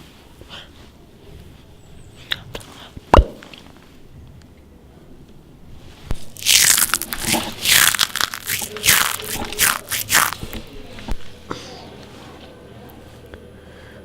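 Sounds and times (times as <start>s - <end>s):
loud crunches: 6.1s - 10.7s.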